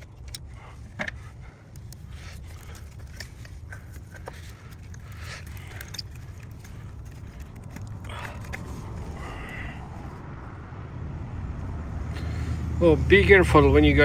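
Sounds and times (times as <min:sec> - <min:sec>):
tools clicking and scraping: 0:00.0 - 0:09.3
low background rumble: 0:00.0 - 0:14.0.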